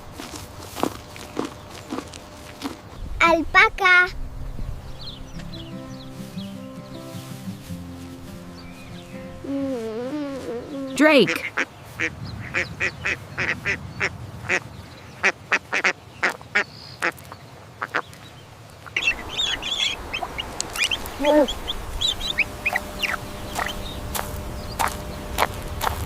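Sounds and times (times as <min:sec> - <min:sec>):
high-pitched bird calls: 0:08.6 - 0:13.6, 0:18.8 - 0:26.0
duck quacking: 0:10.4 - 0:14.6, 0:15.2 - 0:16.4, 0:18.9 - 0:23.8.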